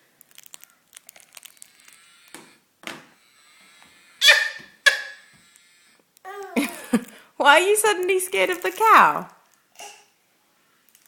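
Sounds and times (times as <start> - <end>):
book pages crinkling and tapping: 0.2 - 3.1, 8.0 - 9.5.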